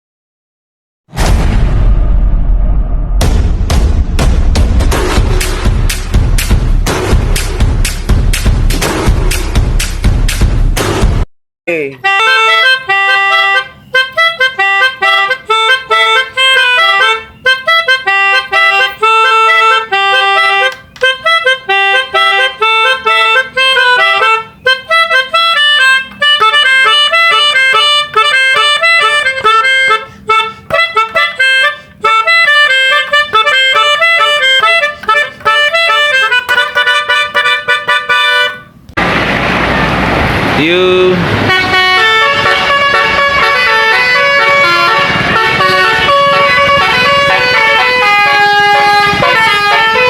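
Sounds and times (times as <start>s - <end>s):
reedy horn-like tune: 12.0s - 38.9s, 40.6s - 50.0s.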